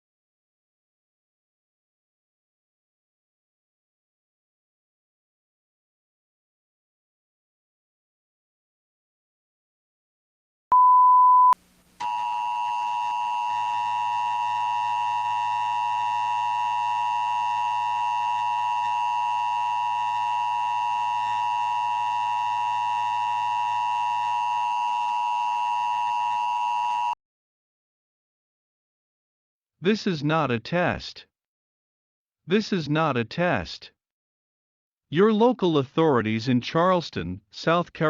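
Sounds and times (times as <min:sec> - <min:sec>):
short single-pitch beep: 0:10.7 - 0:14.0.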